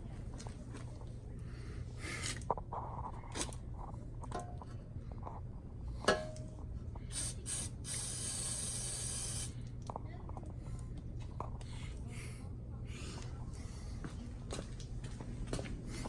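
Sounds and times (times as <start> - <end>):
aerosol can spraying: 7.1 - 9.6.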